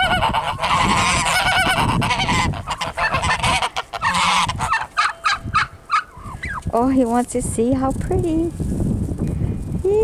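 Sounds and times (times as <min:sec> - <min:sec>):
geese honking: 0:00.0 - 0:06.6.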